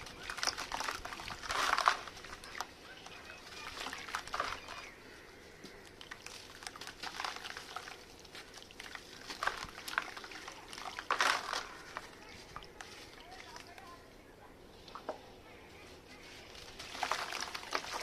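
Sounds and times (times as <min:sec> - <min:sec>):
sand crumbling and crunching: 0:00.0 - 0:14.0, 0:15.8 - 0:18.0.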